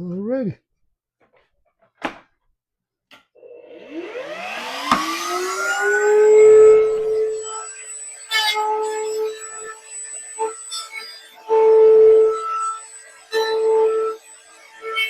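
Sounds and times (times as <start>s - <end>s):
electric motor whine: 3.4s - 15.0s.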